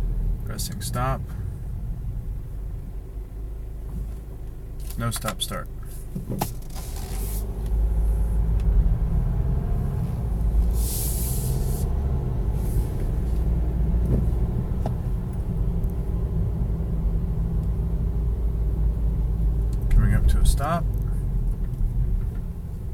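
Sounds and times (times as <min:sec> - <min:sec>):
car engine and road rumble: 0:00.0 - 0:22.9
brief hiss: 0:10.6 - 0:11.9.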